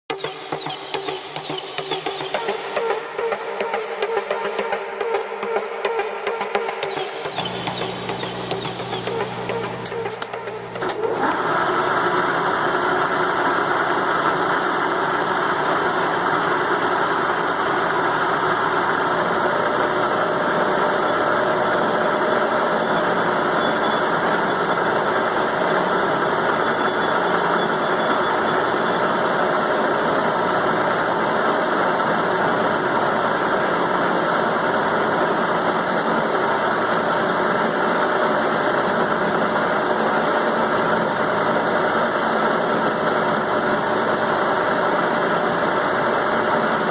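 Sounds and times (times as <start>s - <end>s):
milling machine cutting steel: 0.1s - 11.6s.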